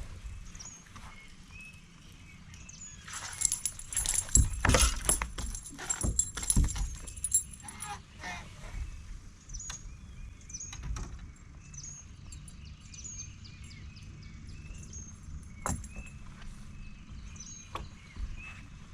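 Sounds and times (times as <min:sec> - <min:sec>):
birds chirping: 0:00.4 - 0:08.0.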